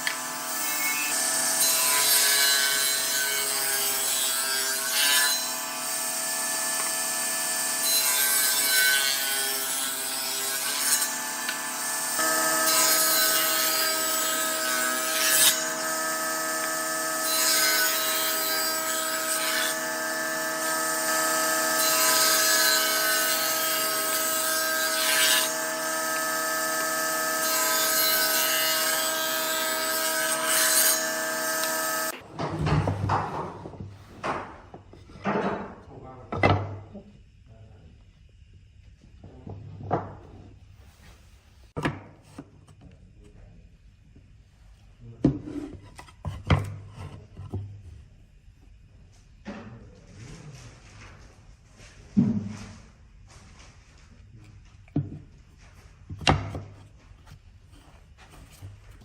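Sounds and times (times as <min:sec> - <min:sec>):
wood lathe motor hum: 0:11.1 - 0:32.2
tool scraping spinning wood: 0:55.5 - 0:59.0.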